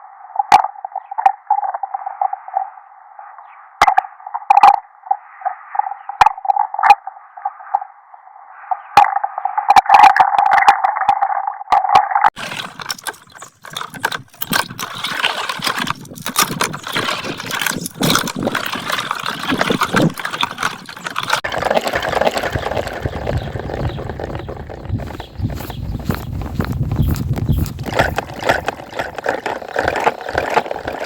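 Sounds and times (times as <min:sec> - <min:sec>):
plastic rings clicking in water: 0:12.4 - 0:23.5, 0:27.8 - 0:31.0
water splashing and dribbling: 0:12.4 - 0:25.2.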